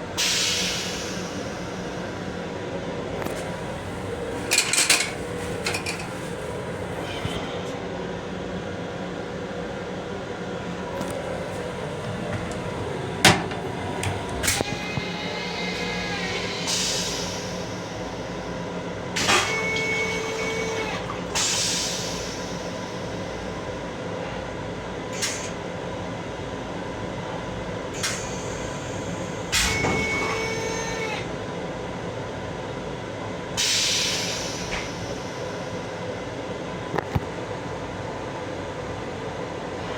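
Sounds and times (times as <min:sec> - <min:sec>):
electric train running hum: 0:00.0 - 0:39.9
sharp knocks and clunks: 0:11.7 - 0:14.7.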